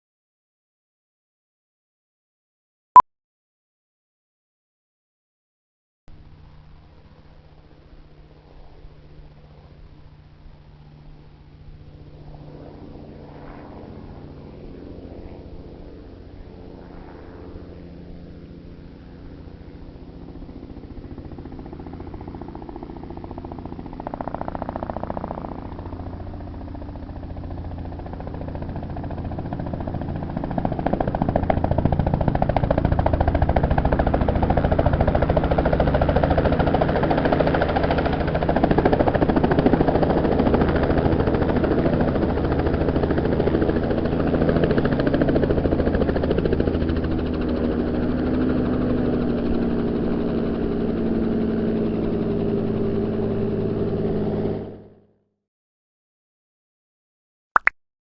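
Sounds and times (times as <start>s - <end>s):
helicopter engine and rotor drone: 6.1s - 55.2s.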